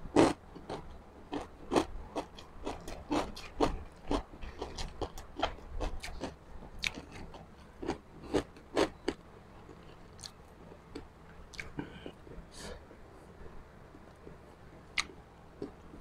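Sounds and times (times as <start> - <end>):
crunching and chewing crispy food: 0.1 - 12.2.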